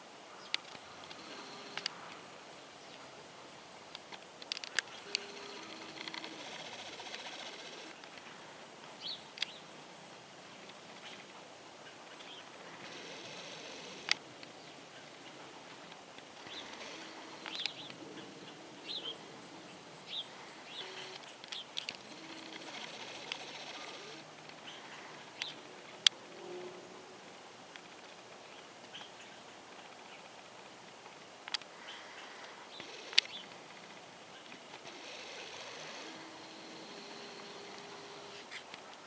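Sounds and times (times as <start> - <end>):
faint high whine: 0.0 - 39.0
birds chirping: 0.3 - 9.7, 11.8 - 26.1, 31.8 - 39.0
sharp clicks: 0.5 - 2.2, 20.8 - 24.6.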